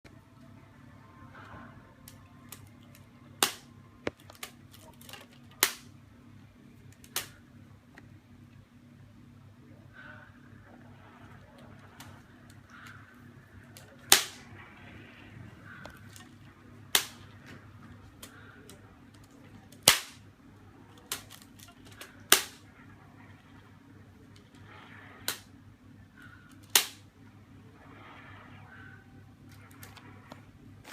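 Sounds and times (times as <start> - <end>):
elastic band snapping: 26.6 - 27.0.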